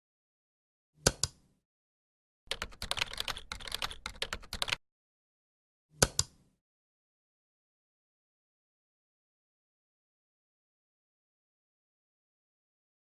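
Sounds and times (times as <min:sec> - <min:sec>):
keyboard typing clicks: 0:02.5 - 0:04.8.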